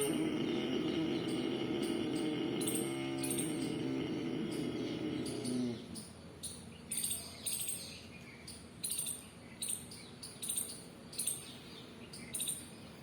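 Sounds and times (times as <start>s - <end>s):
throaty breathing: 0.0s - 6.0s
small birds chirping: 0.0s - 13.0s.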